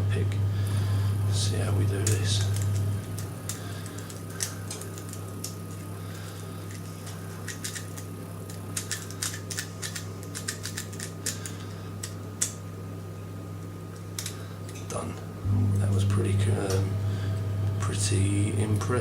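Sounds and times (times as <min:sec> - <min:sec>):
steady low hum: 0:00.0 - 0:19.0
lock pick clicking in a lock: 0:07.4 - 0:12.6.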